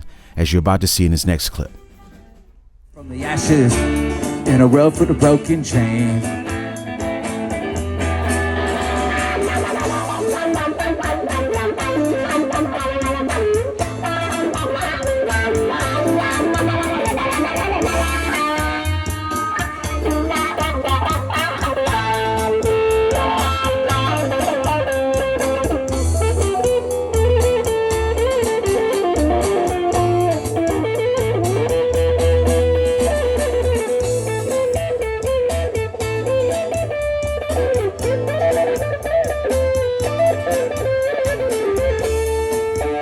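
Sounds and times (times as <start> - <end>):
bass: 0.0 - 43.0
electric guitar solo: 5.1 - 43.0.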